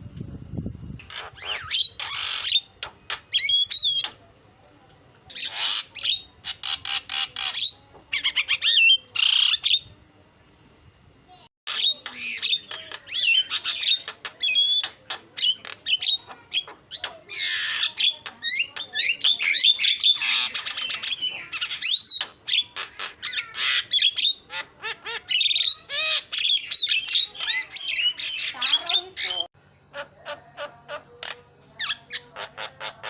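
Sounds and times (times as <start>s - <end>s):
myna chattering: 11.7s - 33.0s.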